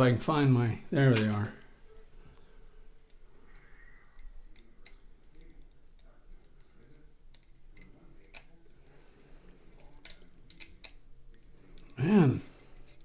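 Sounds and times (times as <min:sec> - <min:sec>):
metal tools clicking on a padlock: 0:03.1 - 0:08.6, 0:09.7 - 0:11.9.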